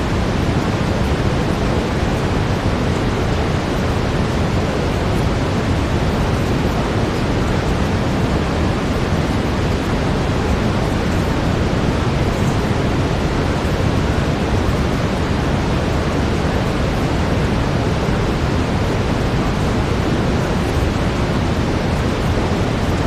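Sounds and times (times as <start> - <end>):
brown noise deep hiss: 0.0 - 23.0.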